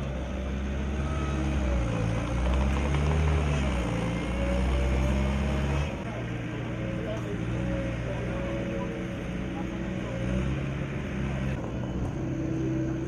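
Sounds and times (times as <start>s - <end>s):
heavy machine engine drone: 0.0s - 13.0s.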